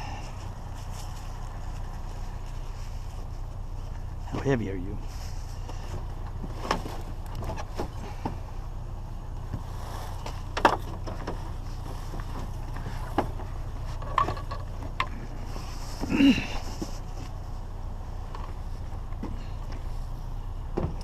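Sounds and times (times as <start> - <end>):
low engine hum: 0.0 - 21.0.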